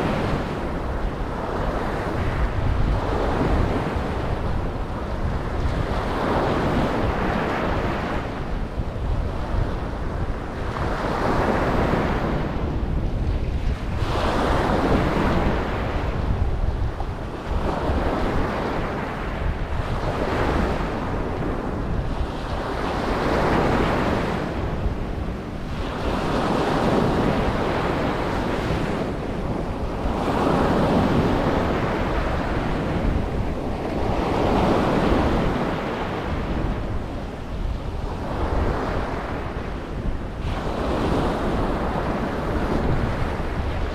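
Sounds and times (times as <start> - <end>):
ocean waves breaking on beach: 0.0 - 43.9
wind rumble on microphone: 0.0 - 43.9.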